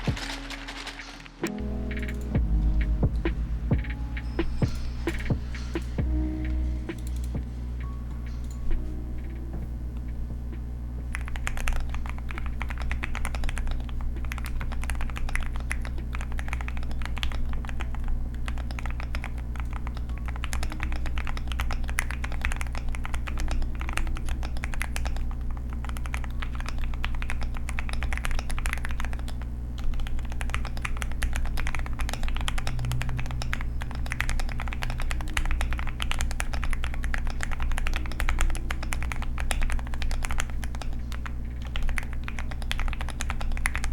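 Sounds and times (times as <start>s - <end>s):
low hum: 0.0s - 43.9s
mechanical keyboard typing: 11.1s - 43.9s.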